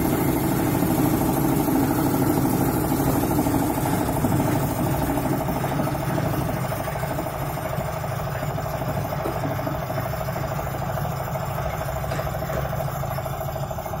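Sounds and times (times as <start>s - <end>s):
hoist engine running: 0.0s - 14.0s.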